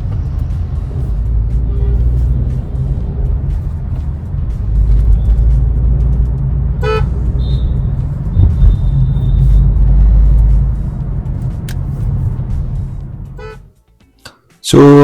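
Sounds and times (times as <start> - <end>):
road and engine rumble: 0.0 - 14.3
car horn toot: 1.6 - 2.4, 6.7 - 10.0, 13.3 - 13.7.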